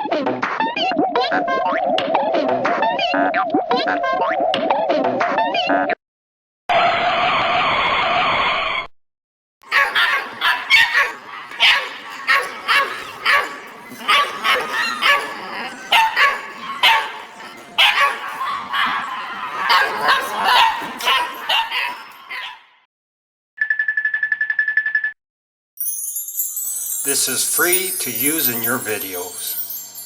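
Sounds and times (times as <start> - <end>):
dog barking: 9.7 - 22.7.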